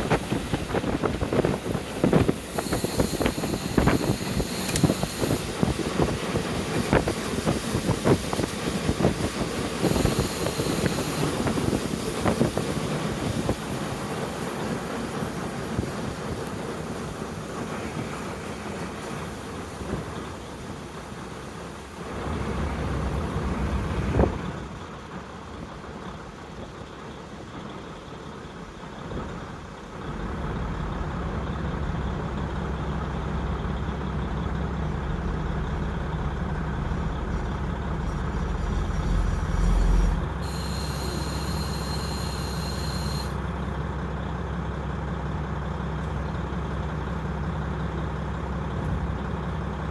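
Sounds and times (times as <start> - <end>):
diesel railcar engine running: 0.0 - 49.9
hissing air with whistling tone: 1.4 - 5.6, 9.8 - 12.4.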